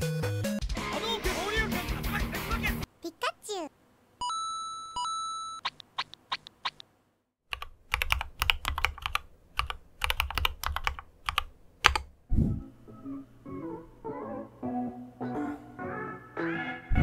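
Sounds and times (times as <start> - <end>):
keyboard keystrokes clicking: 7.5 - 12.1.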